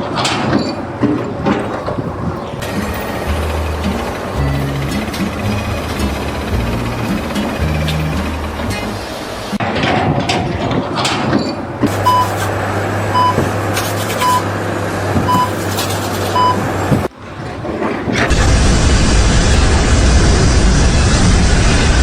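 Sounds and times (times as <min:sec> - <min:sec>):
engine running: 0:00.0 - 0:22.0
loud steady rumble: 0:00.0 - 0:22.0
reversing alarm beeping: 0:11.9 - 0:12.5, 0:13.1 - 0:13.6, 0:14.2 - 0:14.5, 0:15.2 - 0:15.6, 0:16.3 - 0:16.7.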